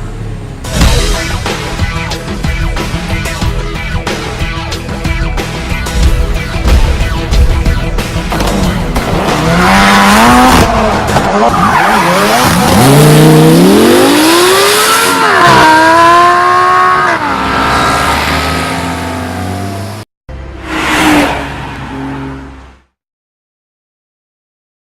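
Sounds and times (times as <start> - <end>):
sports car engine revving: 8.2 - 20.0.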